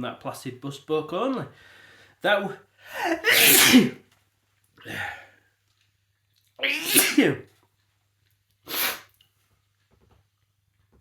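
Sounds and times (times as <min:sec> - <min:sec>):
person breathing: 0:01.6 - 0:02.2
person sneezing: 0:02.9 - 0:04.0, 0:06.6 - 0:07.4, 0:08.7 - 0:09.1.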